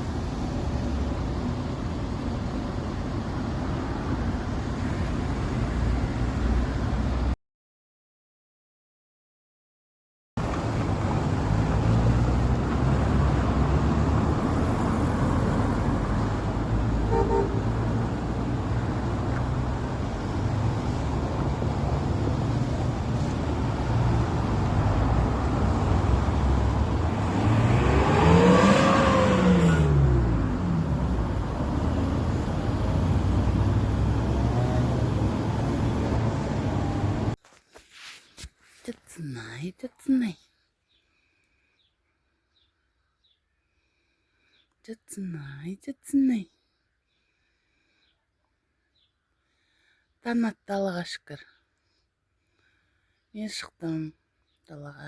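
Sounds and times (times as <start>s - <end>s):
road traffic rumble: 0.0s - 7.4s, 10.4s - 37.4s
vehicle passing by: 10.4s - 37.4s
car horn toot: 17.0s - 17.9s.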